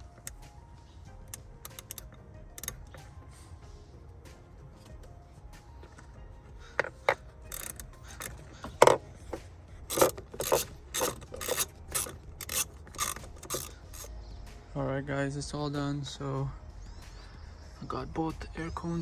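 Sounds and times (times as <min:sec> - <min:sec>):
sharp clicks: 0:01.2 - 0:03.1, 0:06.8 - 0:14.1
hand tool tightening strokes: 0:01.3 - 0:03.1, 0:05.6 - 0:14.1.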